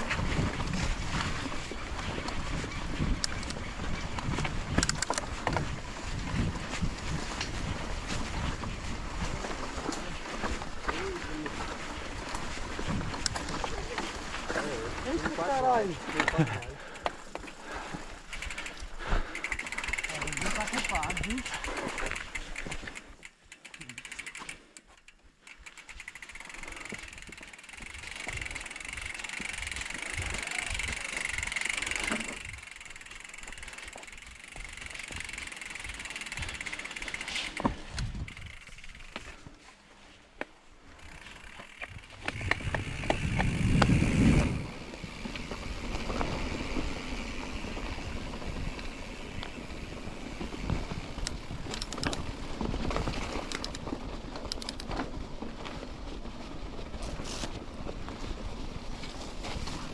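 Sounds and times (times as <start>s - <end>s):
wind rumble on microphone: 0.0s - 9.6s, 42.0s - 44.9s
bike rattling over bumps: 0.0s - 39.8s, 40.8s - 59.9s
bike tyre noise: 0.0s - 59.9s.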